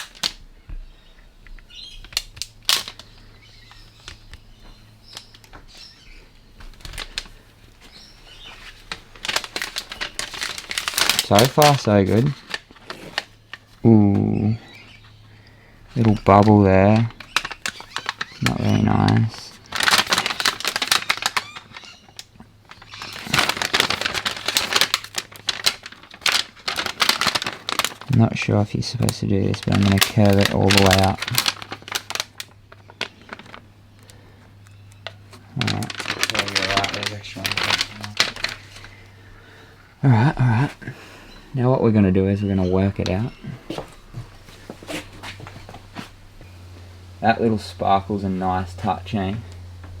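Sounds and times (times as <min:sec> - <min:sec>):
backing paper crinkling: 0:01.6 - 0:14.5, 0:15.9 - 0:41.4
loud crackle: 0:08.8 - 0:13.6, 0:17.0 - 0:28.3, 0:28.9 - 0:33.7, 0:35.4 - 0:39.0.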